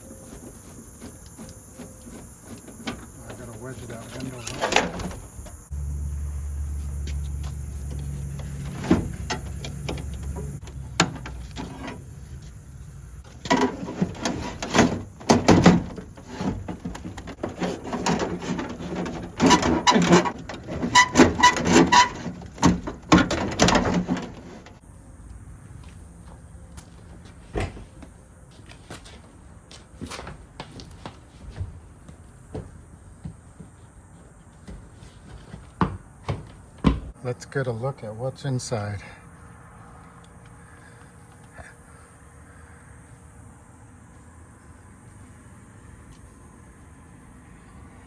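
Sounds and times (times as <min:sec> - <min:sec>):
clicks and knocks of prying parts: 0:07.0 - 0:12.5, 0:13.2 - 0:24.7.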